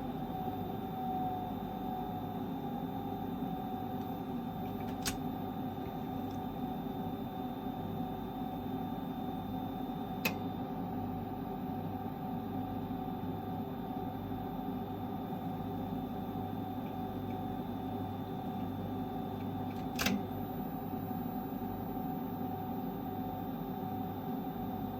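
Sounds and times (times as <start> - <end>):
electrical hum and whine: 0.0 - 24.9
sharp clicks: 19.7 - 20.2.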